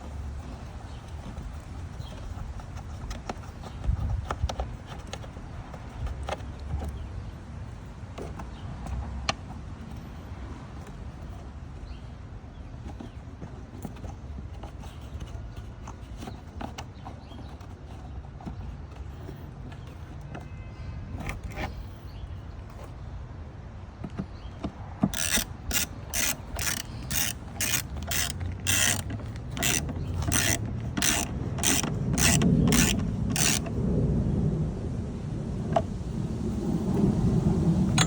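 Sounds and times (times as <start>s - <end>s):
tool handling clicks: 24.1s - 33.7s
ratchet wrench clicking: 25.1s - 33.7s.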